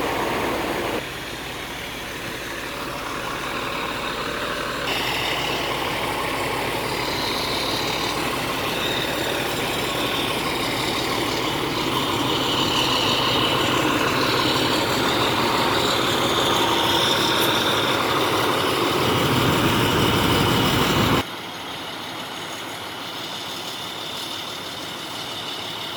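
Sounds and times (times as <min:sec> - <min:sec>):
diesel engine idling: 0:00.0 - 0:25.9.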